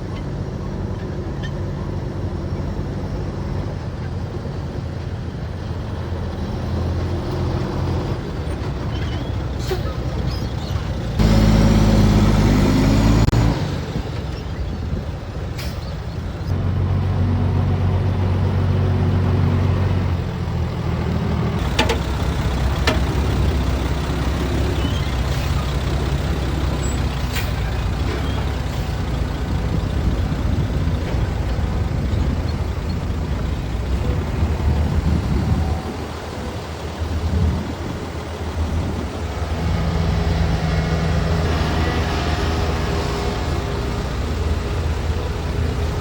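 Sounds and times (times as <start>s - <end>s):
heavy diesel engines working: 0.0s - 46.0s.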